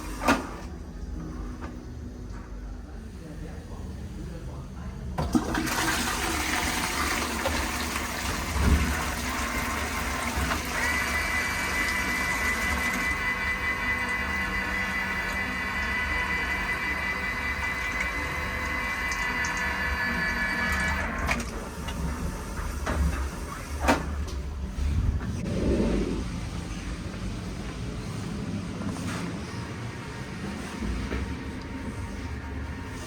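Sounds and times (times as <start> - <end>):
toilet flushing: 0.0 - 0.7, 5.2 - 24.7.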